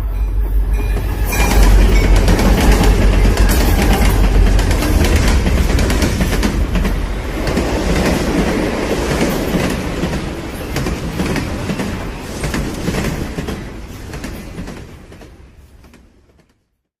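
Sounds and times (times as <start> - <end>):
loud rumbling and rattling: 0.0 - 10.4.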